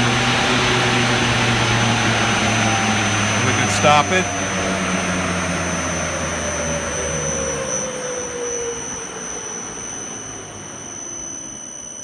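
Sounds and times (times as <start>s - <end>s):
high-pitched whine: 0.0s - 4.8s
fans winding down: 0.0s - 7.6s.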